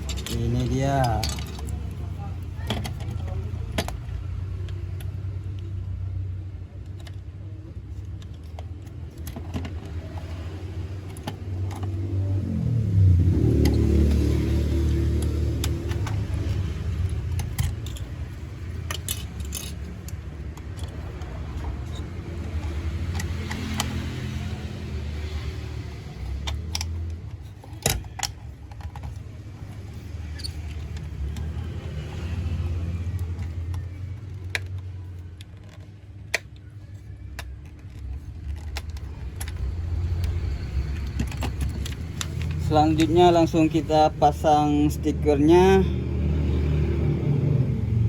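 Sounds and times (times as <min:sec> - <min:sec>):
plastic toy parts clicking: 0:14.9 - 0:24.4, 0:25.3 - 0:43.4.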